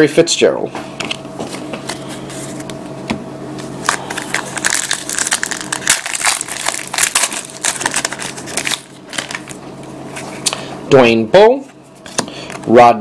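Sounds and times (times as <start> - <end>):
foil wrapper crinkling and tearing: 3.8 - 9.7.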